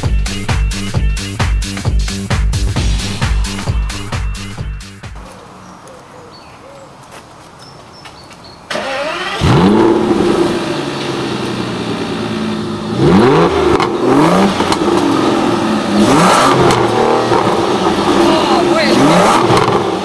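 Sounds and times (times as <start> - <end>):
car engine starting: 0.0 - 5.7, 8.7 - 20.0
car engine idling: 0.0 - 5.8, 8.7 - 20.0
engine revving in blips: 8.7 - 20.0.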